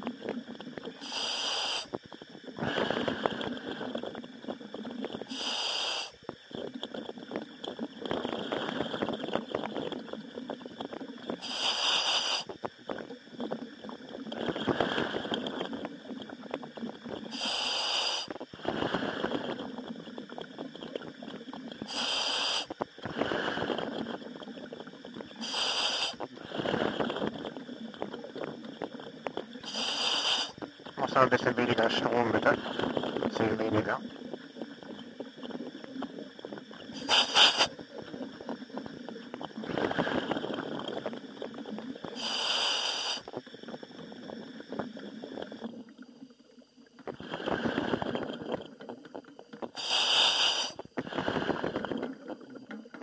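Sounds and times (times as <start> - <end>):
bubbling and gurgling: 0.0 - 53.0
diver inhaling air hiss: 1.0 - 4.0, 5.2 - 6.3, 11.4 - 12.8, 14.4 - 15.6, 17.3 - 19.7, 21.8 - 24.2, 25.3 - 27.3, 29.6 - 30.8, 36.8 - 37.9, 42.1 - 43.7, 49.8 - 51.9.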